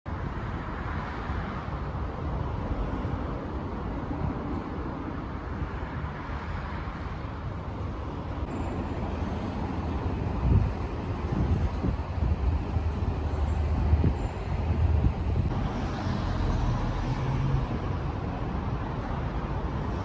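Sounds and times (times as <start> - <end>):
road traffic rumble: 0.1 - 20.0.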